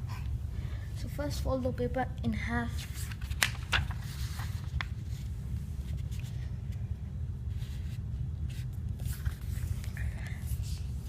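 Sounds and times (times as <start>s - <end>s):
low background rumble: 0.0s - 11.0s
paper rustling: 2.7s - 6.8s, 7.5s - 11.0s.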